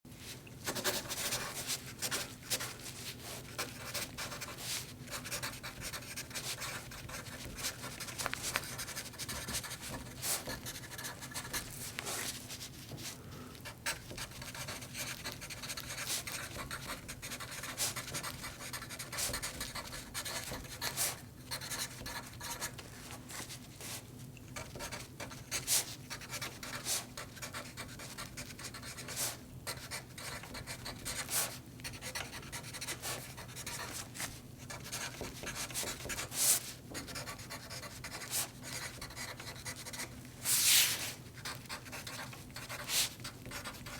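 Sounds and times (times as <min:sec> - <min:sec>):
pen scratching on paper: 0:00.7 - 0:02.7, 0:03.5 - 0:11.6, 0:34.7 - 0:40.1.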